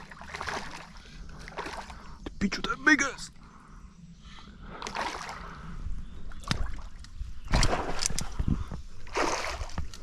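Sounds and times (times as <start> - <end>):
water sloshing and splashing: 0.0 - 2.2, 4.7 - 10.0.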